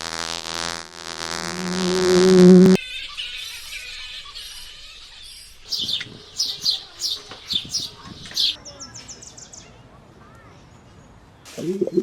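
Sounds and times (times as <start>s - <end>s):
bird chirping: 2.0s - 9.8s.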